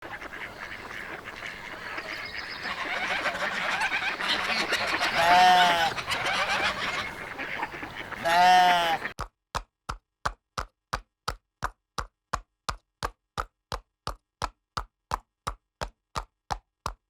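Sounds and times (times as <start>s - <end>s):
horse neighing: 5.0s - 6.7s, 8.1s - 9.1s.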